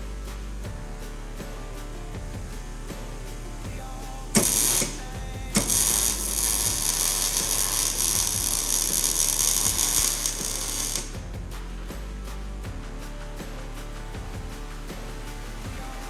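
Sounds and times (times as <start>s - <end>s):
welder arc crackling: 0.1s - 11.6s.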